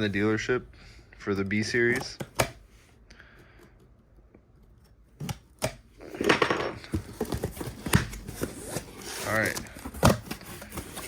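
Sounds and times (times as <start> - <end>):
boxes knocking: 6.0 - 8.6.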